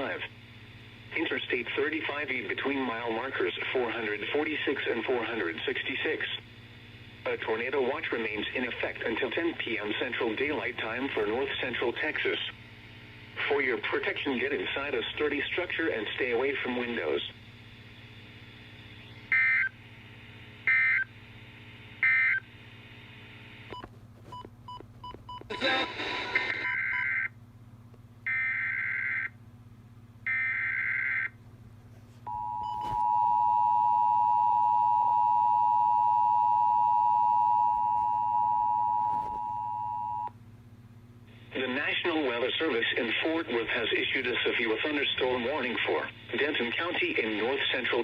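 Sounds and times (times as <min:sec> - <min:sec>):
static: 0:00.0 - 0:26.9.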